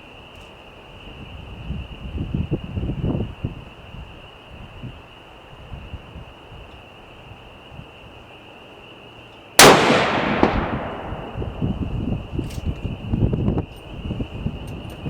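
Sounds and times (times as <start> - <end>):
pistol shot with echo: 9.6 - 12.6.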